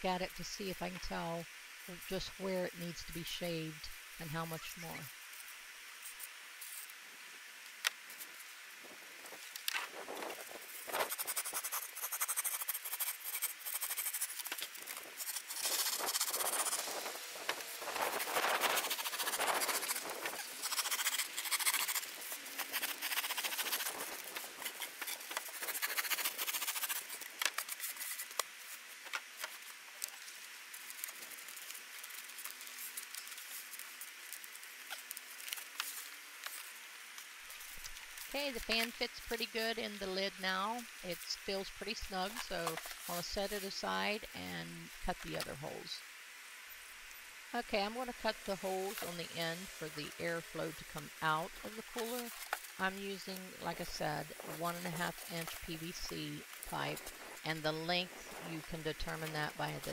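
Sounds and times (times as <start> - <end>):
knife scraping foam: 10.9 - 17.1, 17.9 - 28.4.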